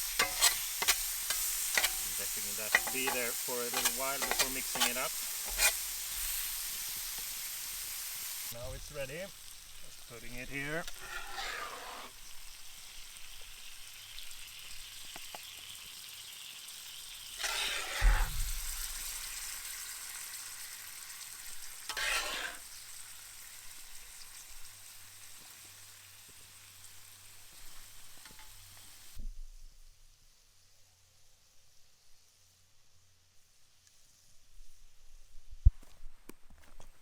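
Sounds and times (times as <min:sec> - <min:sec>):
stirring and scraping in pan: 0:00.0 - 0:16.0, 0:16.8 - 0:29.2
food sizzling in a pan: 0:00.0 - 0:29.7.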